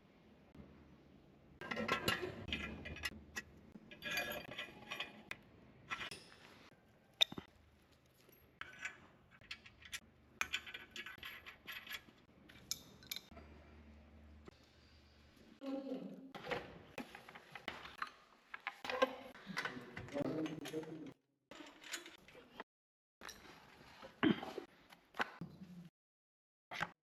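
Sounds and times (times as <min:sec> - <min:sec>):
metal parts and tools clinking: 0:01.6 - 0:13.4, 0:17.0 - 0:22.5.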